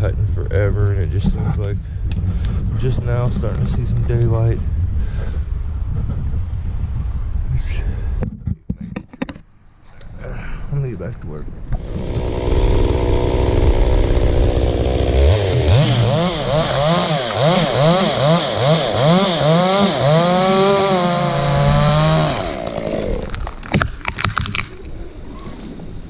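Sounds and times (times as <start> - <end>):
chainsaw idling and revving: 11.8 - 23.6.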